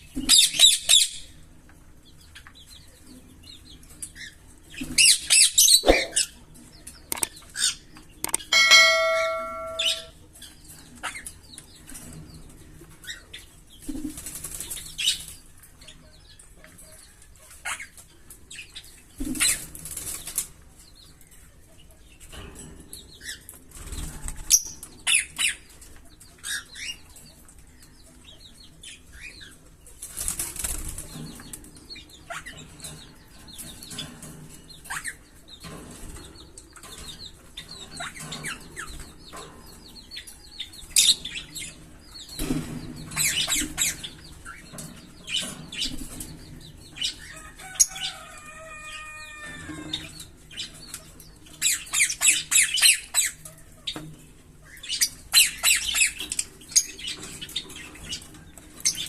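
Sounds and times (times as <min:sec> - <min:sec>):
lovebirds chirping: 0:04.8 - 0:10.1
bird wavering call: 0:08.5 - 0:10.1.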